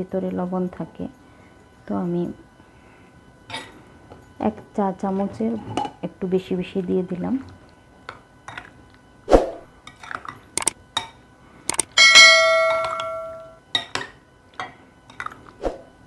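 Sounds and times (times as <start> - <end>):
metal ringing: 11.9 - 13.6
utensils clinking against dishes: 12.0 - 15.4.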